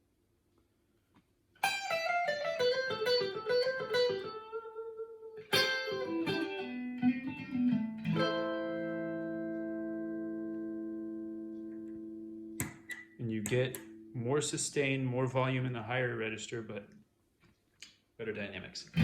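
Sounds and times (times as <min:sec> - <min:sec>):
guitar chord ringing out: 0:01.6 - 0:14.2
clean electric guitar notes: 0:01.6 - 0:14.5.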